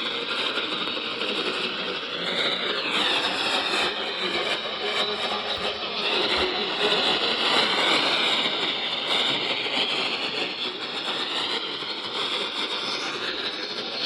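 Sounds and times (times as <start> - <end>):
radio static hiss: 0.5 - 11.8.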